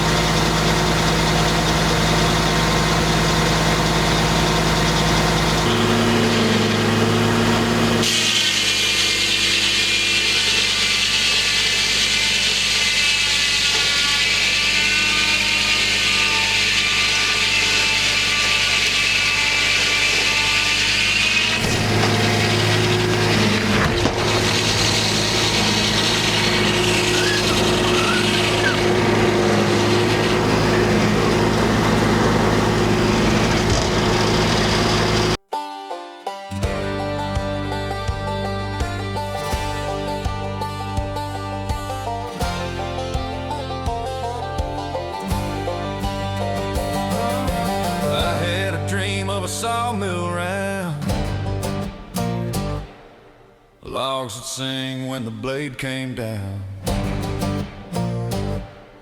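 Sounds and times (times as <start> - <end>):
saw blade whining in wood: 0.0 - 35.4, 42.4 - 49.2
sawmill engine running: 0.0 - 35.4, 36.6 - 53.3.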